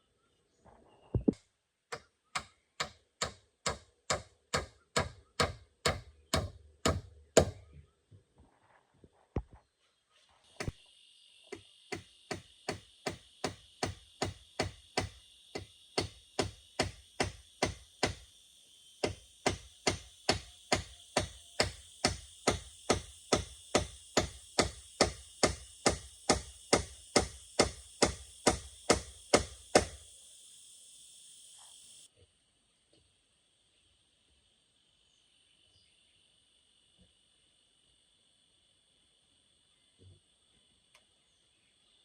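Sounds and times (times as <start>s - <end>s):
chopping strikes on wood: 1.9s - 7.7s, 11.9s - 18.2s, 19.0s - 30.0s
high drone of insects: 10.5s - 42.0s.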